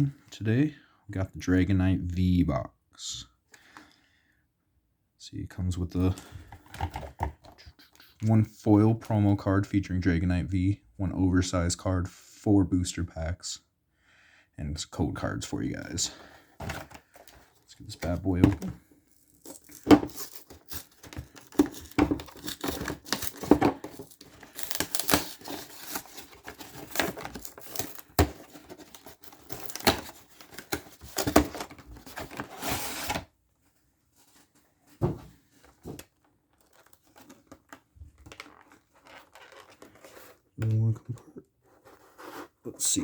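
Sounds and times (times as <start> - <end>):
cardboard box handling: 6.5 - 7.6, 16.5 - 33.3, 34.2 - 40.8
plastic wrap crackling: 18.4 - 33.0.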